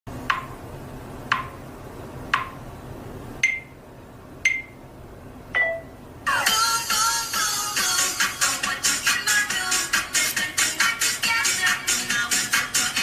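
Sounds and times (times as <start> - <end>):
music with synthesized singing: 6.2 - 13.0.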